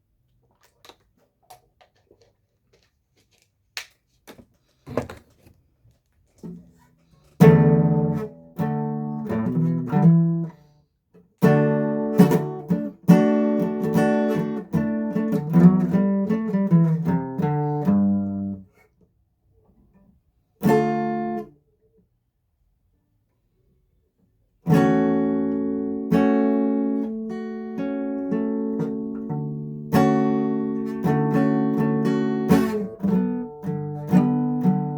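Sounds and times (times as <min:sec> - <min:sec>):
acoustic guitar chords: 0:07.4 - 0:10.5, 0:11.4 - 0:18.6, 0:24.7 - 0:34.9.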